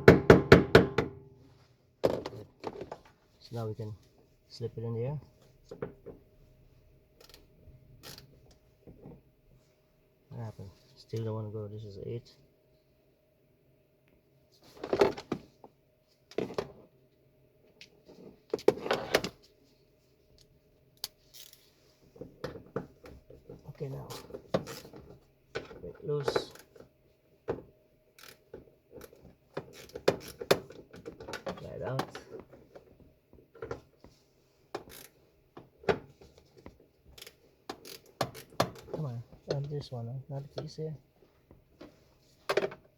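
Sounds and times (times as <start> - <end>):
tools clicking and clanking: 37.1 - 39.7.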